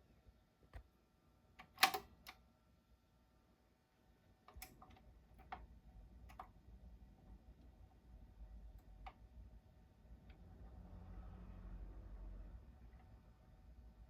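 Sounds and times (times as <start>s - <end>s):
turntable mechanism clicking: 1.6s - 2.4s.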